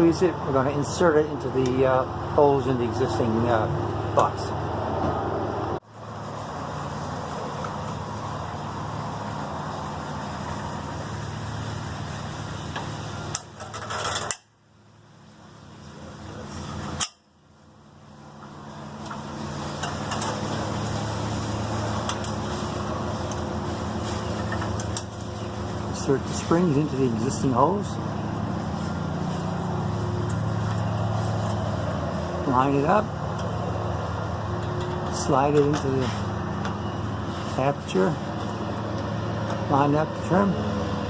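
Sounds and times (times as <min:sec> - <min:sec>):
low machine drone: 0:00.0 - 0:13.4, 0:18.0 - 0:41.0.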